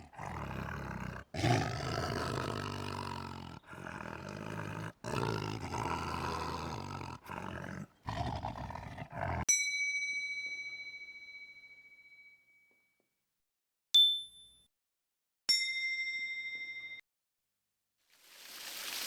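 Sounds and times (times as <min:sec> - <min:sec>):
short animal roars: 0:00.0 - 0:09.4
high bell ding: 0:09.5 - 0:12.7, 0:15.5 - 0:17.0.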